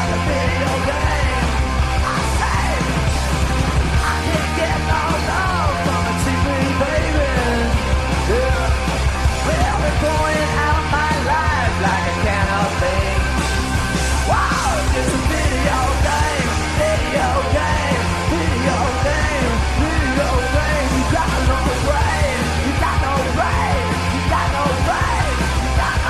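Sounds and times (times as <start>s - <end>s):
bass guitar: 0.0s - 26.0s
drums: 0.0s - 26.0s
electric guitar: 0.0s - 26.0s.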